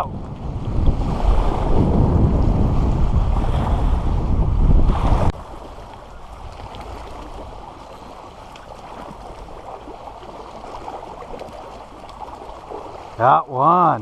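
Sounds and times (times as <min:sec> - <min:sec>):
wind buffeting microphone: 0:00.0 - 0:13.2
water lapping: 0:00.5 - 0:14.0.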